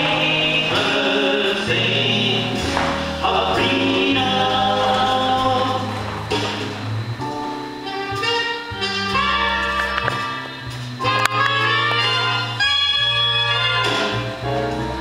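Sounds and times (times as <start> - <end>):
choir singing in harmony: 0.0 - 6.6
instrumental accompaniment: 0.0 - 15.0.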